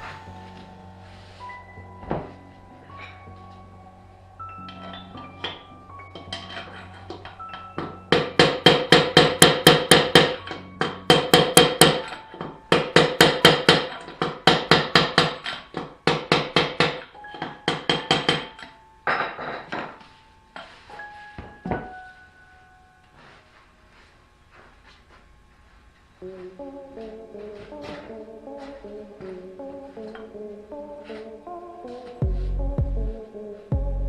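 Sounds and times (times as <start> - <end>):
background music: 0.0 - 24.1, 26.2 - 34.0
hammer striking metal: 4.6 - 20.0.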